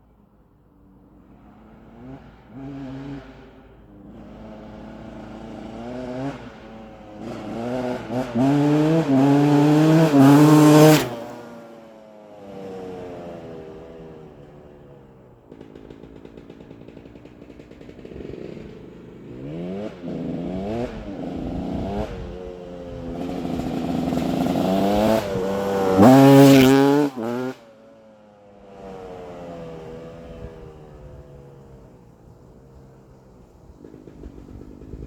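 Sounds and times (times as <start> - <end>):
two-stroke engine revving: 1.2 - 11.8, 12.4 - 27.8, 28.6 - 35.0.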